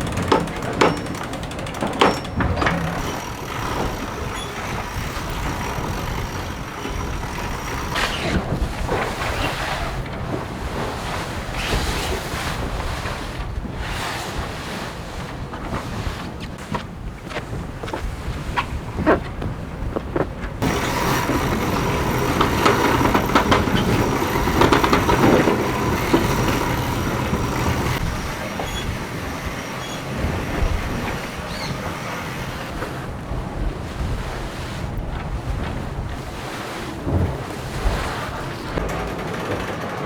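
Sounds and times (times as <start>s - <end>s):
gear knocking and rattling on deck: 0.0s - 9.3s, 19.1s - 33.0s, 38.7s - 40.0s
wind and water rushing: 0.0s - 39.9s.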